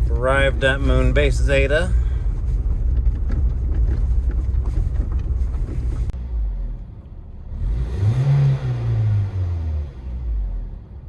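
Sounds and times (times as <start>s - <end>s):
car engine rumble: 0.0s - 11.0s
car engine revving: 5.4s - 11.0s.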